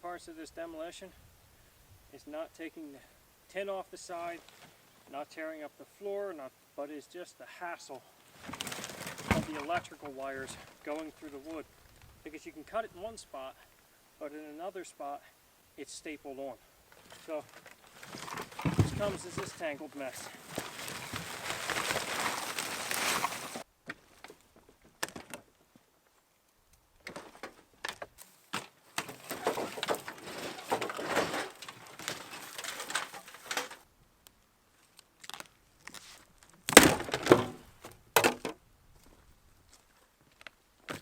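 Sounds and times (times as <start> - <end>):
wood and wiring scraping and rustling: 8.2 - 12.3, 16.9 - 25.4, 27.0 - 33.9, 35.2 - 41.0
loud cracks and thuds: 18.3 - 19.5, 36.6 - 38.6.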